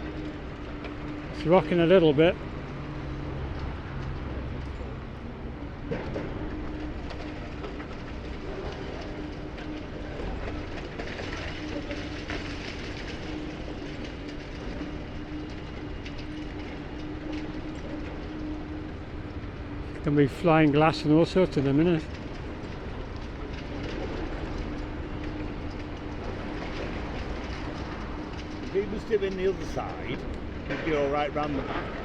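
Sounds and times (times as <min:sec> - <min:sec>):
constant whine: 0:00.0 - 0:32.0
excavator engine and hydraulic drone: 0:00.0 - 0:32.0
breaking masonry clatter and scrape: 0:07.0 - 0:18.3.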